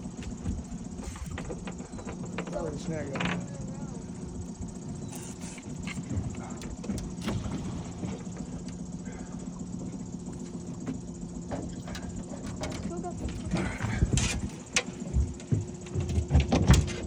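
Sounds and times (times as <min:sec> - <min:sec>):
boat motor humming: 0:00.0 - 0:17.0
light knocks and clicks: 0:00.2 - 0:03.6.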